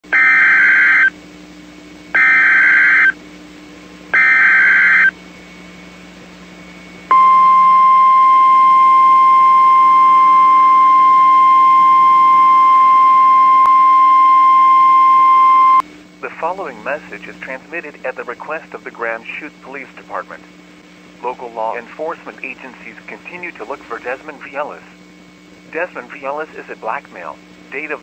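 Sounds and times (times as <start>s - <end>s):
steady warning alarm tone: 0.1s - 1.2s, 2.1s - 3.2s, 4.1s - 5.2s, 7.1s - 15.8s
buzzy screeching data tones: 0.2s - 1.1s, 2.2s - 3.2s, 4.2s - 5.1s.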